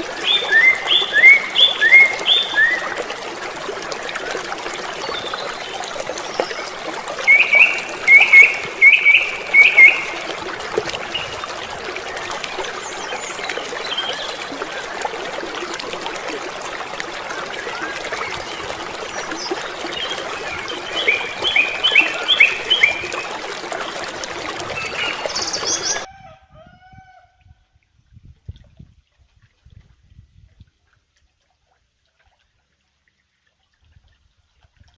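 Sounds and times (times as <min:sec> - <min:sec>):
river water rushing: 0:00.0 - 0:26.1.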